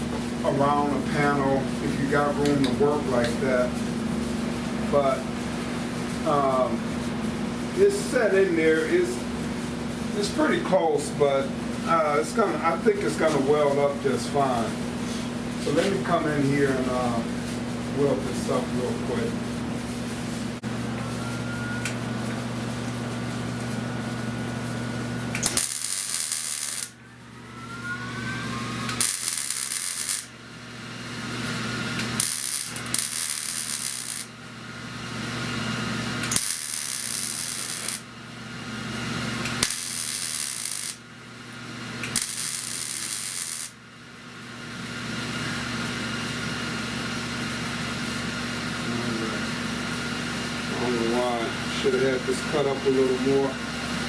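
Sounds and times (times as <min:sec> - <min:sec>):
steady low hum: 0:00.0 - 0:54.0
welder welding sheet metal: 0:25.3 - 0:34.4, 0:35.1 - 0:38.1, 0:39.0 - 0:41.0, 0:42.0 - 0:43.8.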